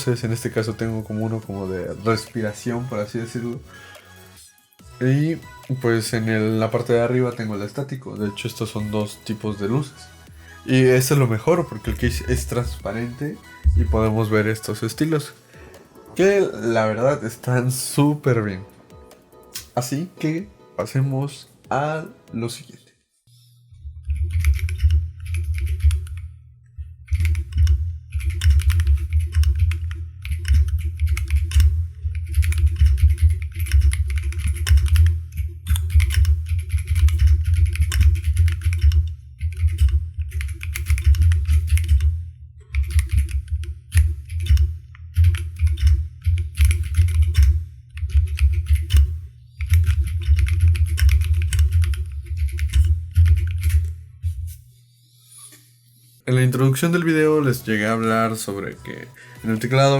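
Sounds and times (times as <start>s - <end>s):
mechanical keyboard typing: 24.1s - 26.2s, 27.1s - 42.1s, 42.7s - 53.9s.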